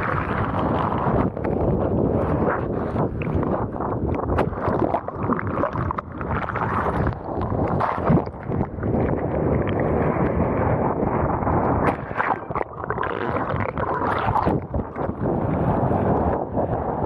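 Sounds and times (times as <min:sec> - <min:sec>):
wind buffeting microphone: 0:00.0 - 0:17.0
water rushing and splashing: 0:04.3 - 0:16.8.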